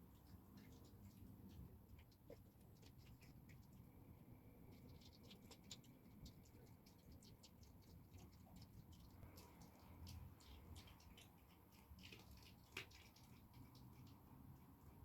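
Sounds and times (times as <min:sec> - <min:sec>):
fox chewing bones: 0:04.7 - 0:14.6.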